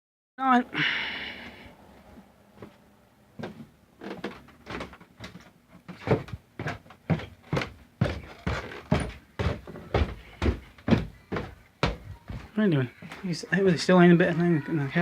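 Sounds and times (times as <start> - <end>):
footsteps on hard floor: 2.6 - 2.8, 3.4 - 14.4.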